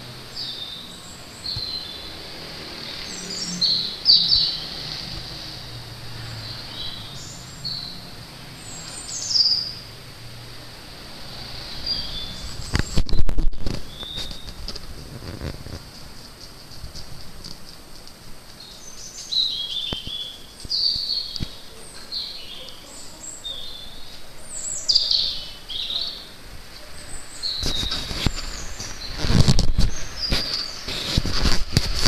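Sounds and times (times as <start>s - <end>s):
songbird singing: 0.0s - 32.0s
loud rumbling and crackling noise: 9.8s - 18.6s, 27.4s - 32.0s.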